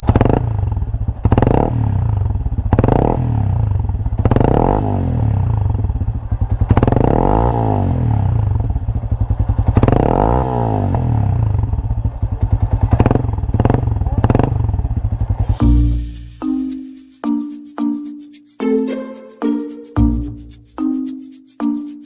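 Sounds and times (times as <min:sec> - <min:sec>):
motorcycle engine revving: 0:00.0 - 0:15.6.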